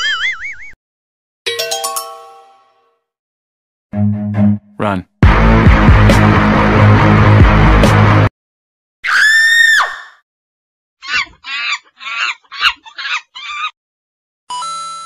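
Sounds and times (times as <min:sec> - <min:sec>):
loud music: 0:04.0 - 0:08.3
chicken squawking: 0:11.0 - 0:13.8.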